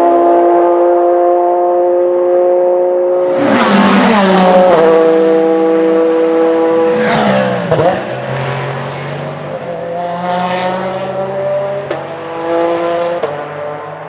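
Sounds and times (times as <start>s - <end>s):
race car engine passing by: 3.1s - 14.0s.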